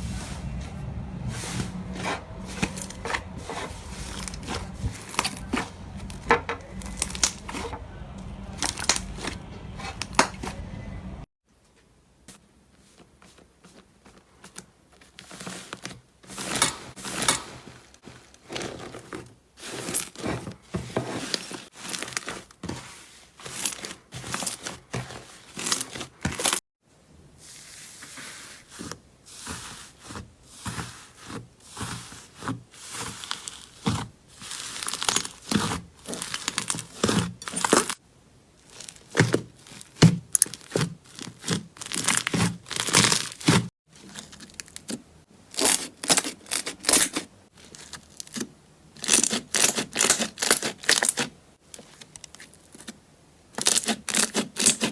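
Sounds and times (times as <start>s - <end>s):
slime crackling and tearing: 2.6s - 7.7s, 33.0s - 38.0s, 38.6s - 45.0s, 45.6s - 52.9s, 53.6s - 54.9s.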